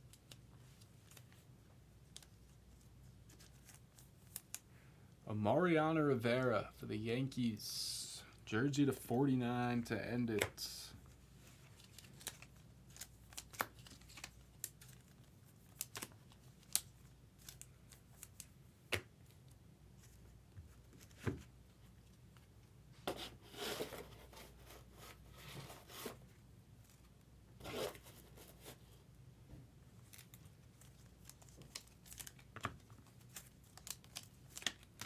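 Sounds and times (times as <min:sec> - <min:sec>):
trading card packs crinkling: 0:03.2 - 0:04.6, 0:10.2 - 0:18.5, 0:30.0 - 0:35.0.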